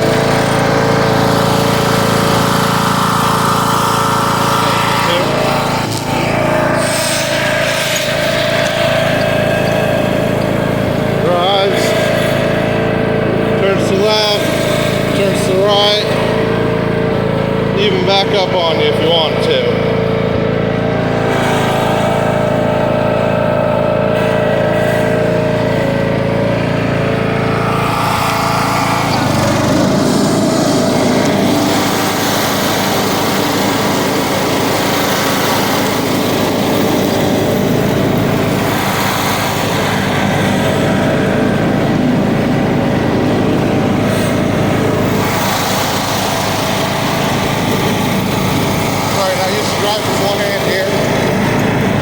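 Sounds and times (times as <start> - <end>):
riding mower engine running: 0.0 - 52.0.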